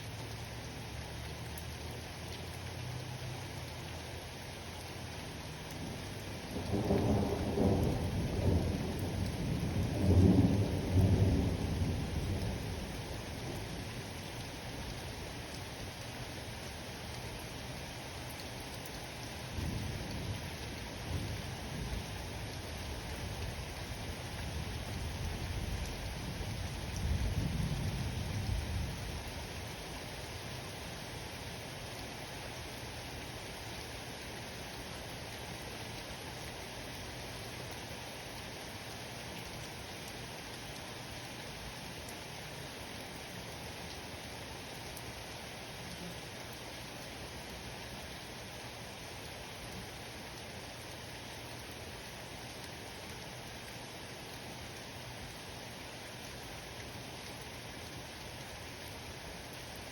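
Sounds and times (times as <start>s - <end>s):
steady rain: 0.0s - 59.9s
thunder rumbling: 6.5s - 12.8s.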